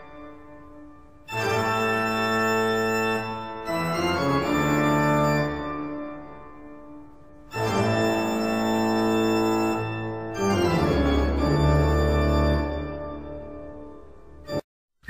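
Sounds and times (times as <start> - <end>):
organ chords: 0.0 - 14.6.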